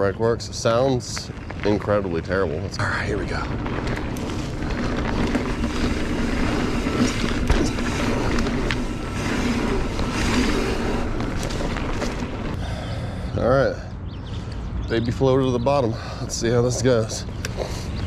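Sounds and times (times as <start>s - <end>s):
bike tyres rolling on dirt: 0.0s - 18.0s
low hum: 0.0s - 18.0s
bike rattles and knocks: 0.5s - 12.7s.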